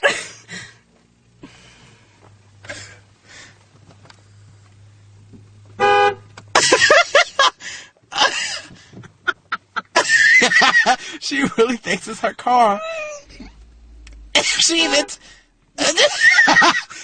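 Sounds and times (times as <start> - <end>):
car horn honk: 5.8 - 6.3, 13.6 - 15.6.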